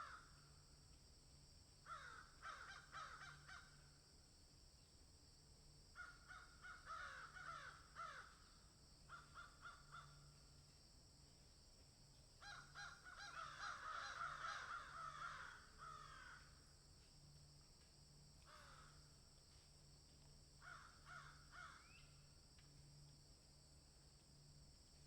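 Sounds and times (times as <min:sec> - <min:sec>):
crows cawing: 0:00.0 - 0:00.4, 0:01.8 - 0:03.8, 0:06.0 - 0:08.5, 0:09.1 - 0:10.4, 0:12.4 - 0:16.6, 0:18.4 - 0:19.1, 0:20.6 - 0:22.0.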